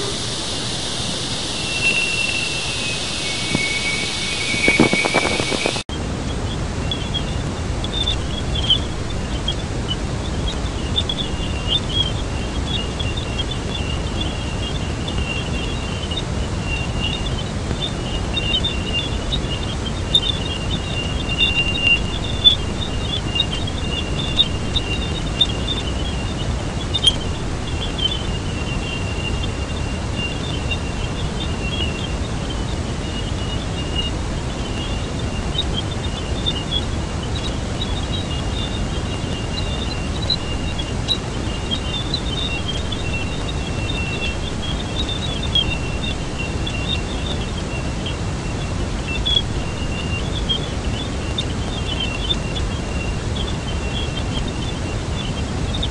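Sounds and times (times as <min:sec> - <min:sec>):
thin high tone: 0:00.0 - 0:05.8
low rushing hiss: 0:00.0 - 0:35.7
crackling chirps: 0:00.0 - 0:55.9.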